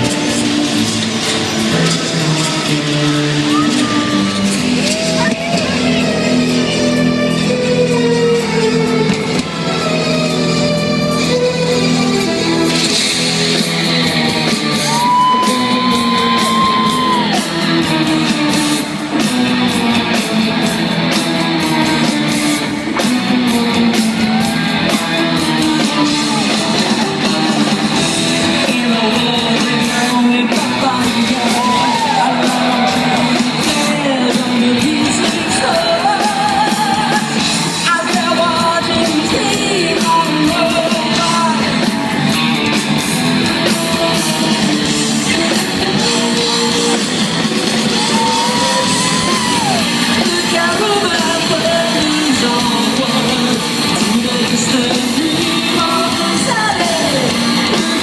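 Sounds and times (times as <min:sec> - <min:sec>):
loud rock music with singing: 0:00.0 - 0:58.0
person shouting: 0:14.9 - 0:17.4.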